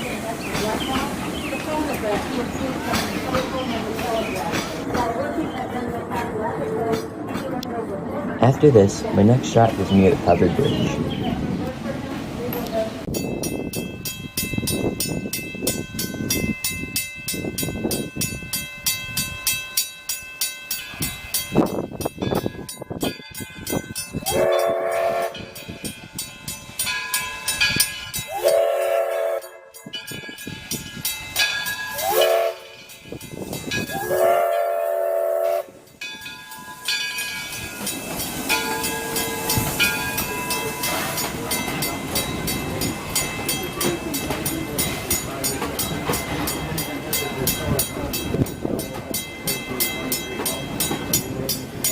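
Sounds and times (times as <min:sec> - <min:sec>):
steam train clicking: 0:00.0 - 0:51.9
steam whistle blasts: 0:24.2 - 0:25.6, 0:28.3 - 0:29.8, 0:31.9 - 0:32.8, 0:33.9 - 0:35.8
steam hiss: 0:30.5 - 0:47.4.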